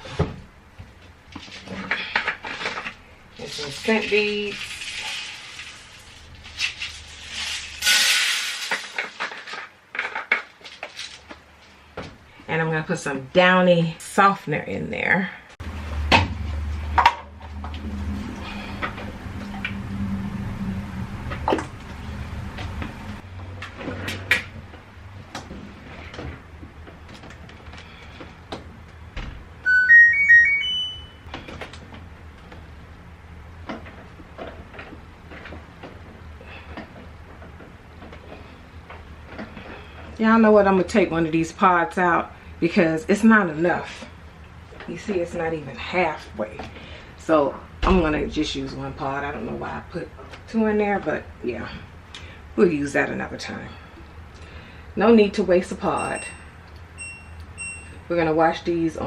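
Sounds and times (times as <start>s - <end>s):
beads rattling into washing machine: 3.5s - 11.3s
washing machine electronic chime: 29.6s - 31.3s, 55.9s - 58.0s.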